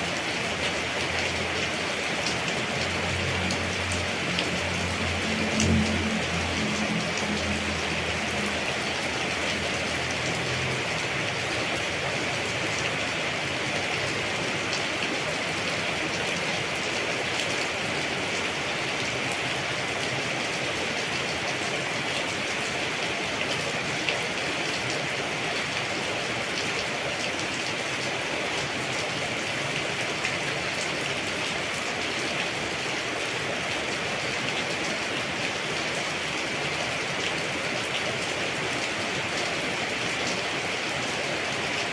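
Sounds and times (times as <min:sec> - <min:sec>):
steady rain hiss: 0:00.0 - 0:41.9
raindrop ticks: 0:02.2 - 0:08.8.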